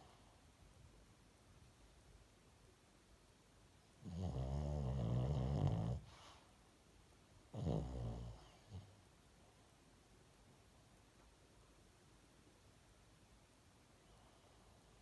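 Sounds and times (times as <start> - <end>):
dog snoring: 4.0 - 6.4, 7.5 - 8.9.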